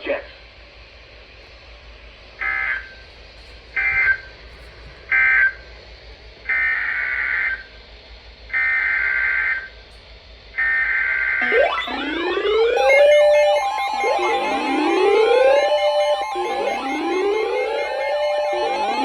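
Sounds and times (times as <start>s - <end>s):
gliding tone: 11.4s - 19.0s
warbling digital data bursts: 11.4s - 19.0s.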